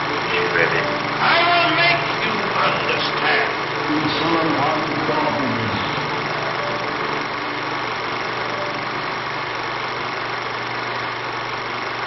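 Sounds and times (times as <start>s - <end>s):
mechanical hum: 0.0s - 12.0s.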